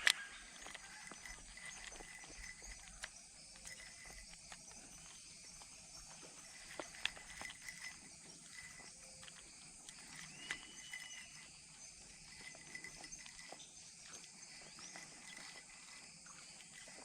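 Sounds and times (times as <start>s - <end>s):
high-pitched insect drone: 0.0s - 17.0s
small clicks and knocks: 0.0s - 17.0s.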